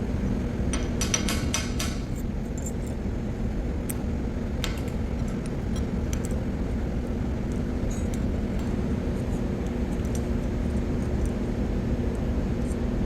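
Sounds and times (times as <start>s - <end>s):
machinery hum: 0.0s - 13.0s.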